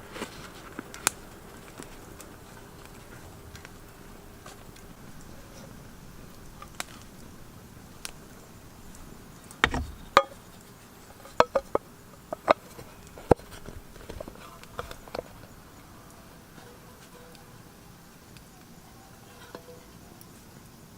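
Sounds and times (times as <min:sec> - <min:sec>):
cooking gear knocks and clicks: 0:09.6 - 0:10.5.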